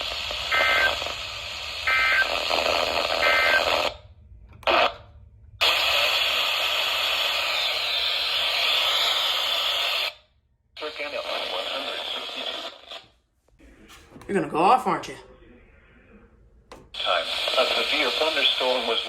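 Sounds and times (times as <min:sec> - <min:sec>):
broadcast hiss: 0:00.0 - 0:03.9, 0:05.6 - 0:10.1, 0:10.8 - 0:13.1, 0:16.8 - 0:19.0
radio static: 0:00.0 - 0:04.0, 0:04.6 - 0:05.0, 0:05.6 - 0:10.1, 0:10.8 - 0:14.2, 0:17.0 - 0:19.0.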